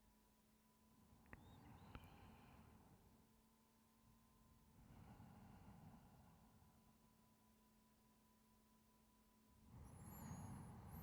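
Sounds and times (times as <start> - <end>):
thin high whistling glides: 9.8 - 11.0.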